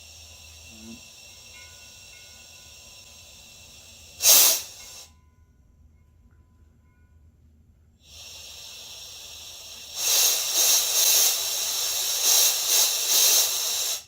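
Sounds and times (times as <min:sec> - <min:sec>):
compressed air hissing: 0:00.0 - 0:05.1, 0:08.0 - 0:14.0.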